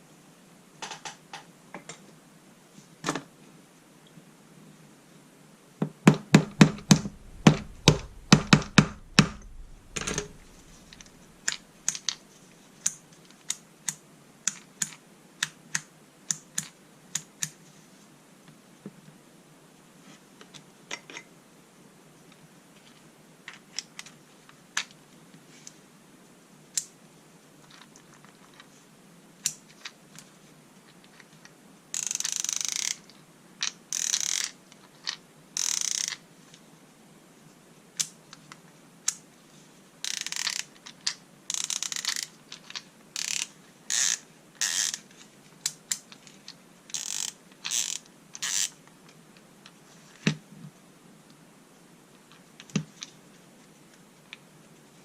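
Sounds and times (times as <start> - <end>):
ratchet screwdriver clicking: 40.1 - 40.6, 41.5 - 42.3, 43.2 - 45.0, 46.9 - 48.7.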